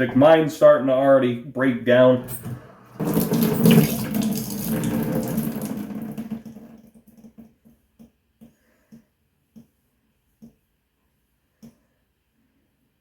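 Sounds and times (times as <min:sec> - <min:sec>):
tap water running: 0:02.2 - 0:07.6
water dripping: 0:02.4 - 0:07.6.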